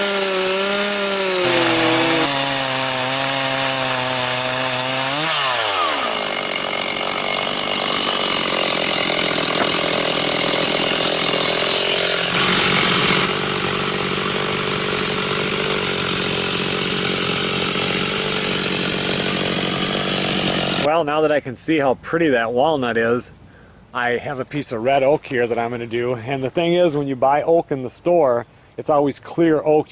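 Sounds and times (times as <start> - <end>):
chainsaw idling: 0.0 - 20.9.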